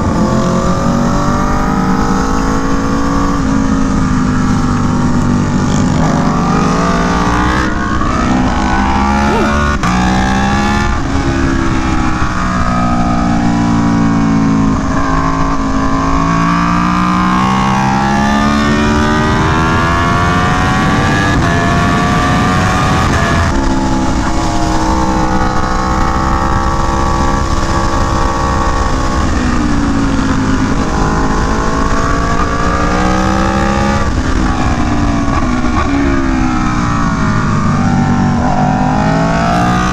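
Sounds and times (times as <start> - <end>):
motorcycle engine revving through upshifts: 0.0 - 39.9.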